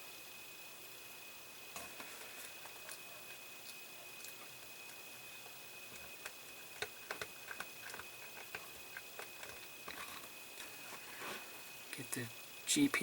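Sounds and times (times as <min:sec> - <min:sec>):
small clicks and taps of parts: 0:05.9 - 0:10.2.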